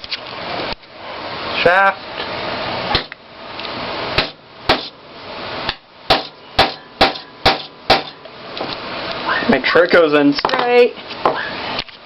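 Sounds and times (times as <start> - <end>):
hammer striking wood: 2.9 - 3.1, 4.2 - 4.9, 6.1 - 8.2.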